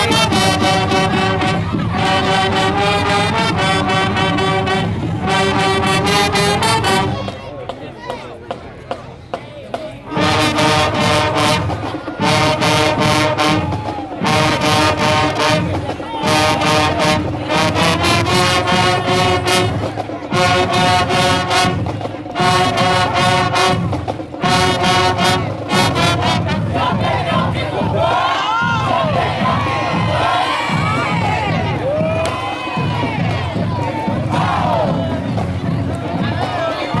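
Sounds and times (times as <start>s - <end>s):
marching band brass chords: 0.0s - 37.0s
drum hits: 30.8s - 35.8s.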